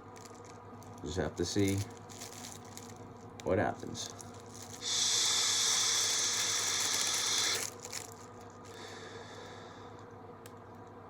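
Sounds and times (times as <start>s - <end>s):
steady high hiss: 3.7s - 10.0s.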